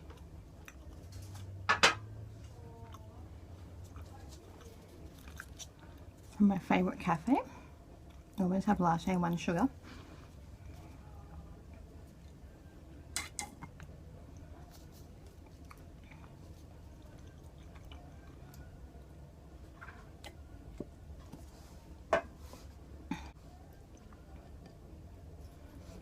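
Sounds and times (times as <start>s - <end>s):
low room hum: 0.0s - 26.0s
tableware clinking: 1.7s - 2.1s.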